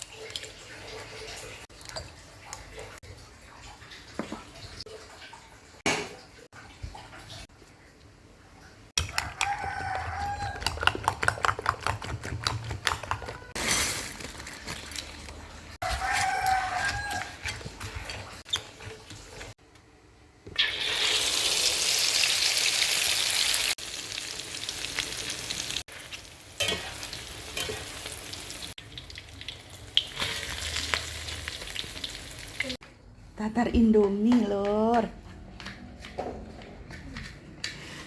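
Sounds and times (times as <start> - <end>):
rooster crowing: 9.1 - 10.8, 15.8 - 17.4
food sizzling in a pan: 20.6 - 32.8.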